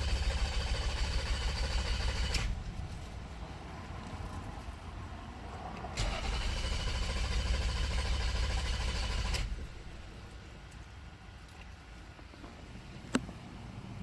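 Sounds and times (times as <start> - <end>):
car engine cranking by starter: 0.0 - 2.7, 5.9 - 10.1.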